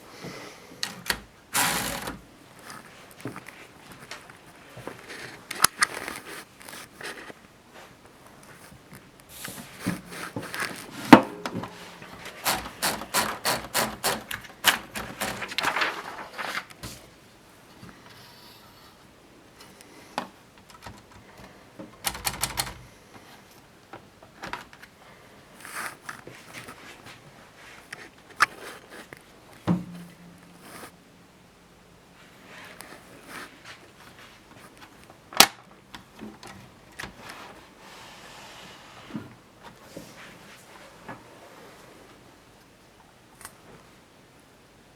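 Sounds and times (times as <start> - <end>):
typewriter keys striking: 0.8 - 2.2, 11.1 - 16.2, 20.6 - 22.9.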